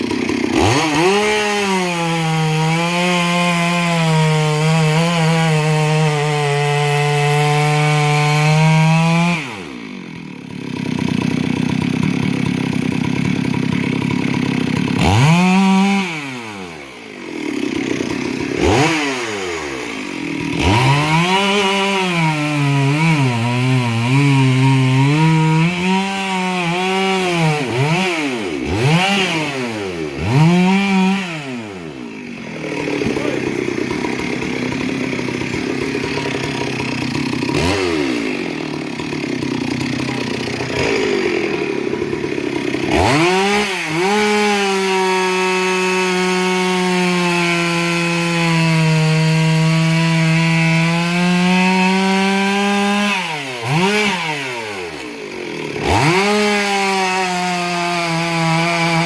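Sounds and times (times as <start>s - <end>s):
chainsaw cutting: 0.0s - 59.0s
chainsaw engine revving: 0.0s - 59.0s.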